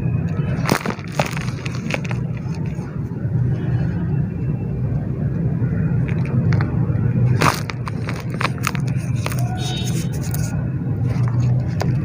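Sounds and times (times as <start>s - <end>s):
steady low rumble: 0.0s - 12.0s
dirt clumps crumbling: 0.4s - 2.8s, 6.1s - 9.5s.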